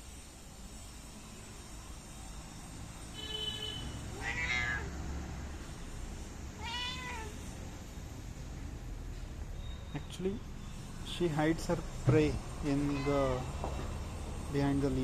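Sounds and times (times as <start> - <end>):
cat meowing: 4.1 - 5.0, 6.6 - 7.5, 12.7 - 13.6.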